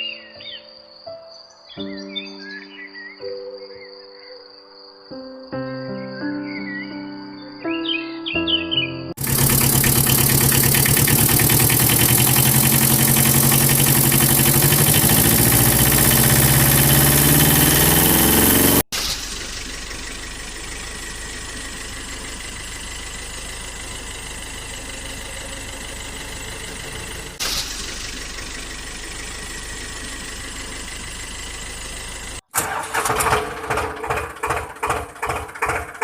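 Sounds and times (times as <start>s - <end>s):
engine chugging: 9.2s - 36.0s
quieter engine running: 9.2s - 36.0s.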